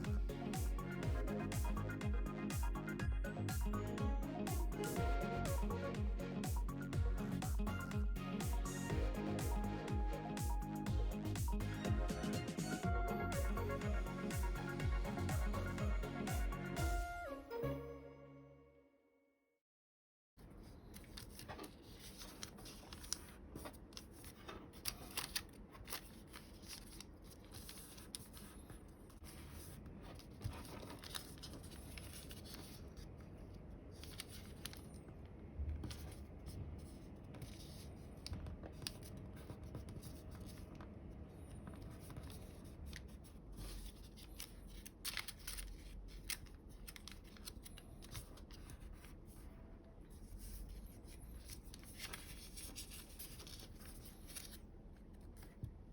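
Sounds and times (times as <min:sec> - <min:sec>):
paper rustling and crackling: 0:20.5 - 0:35.2, 0:41.5 - 0:49.4, 0:50.1 - 0:55.7.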